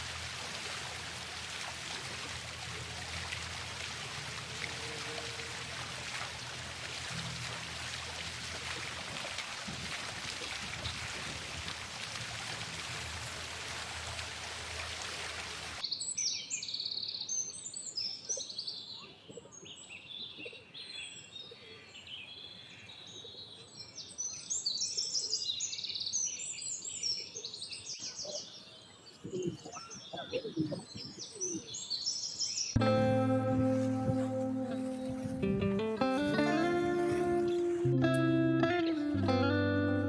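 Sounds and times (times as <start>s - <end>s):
small birds chirping: 15.8s - 32.8s.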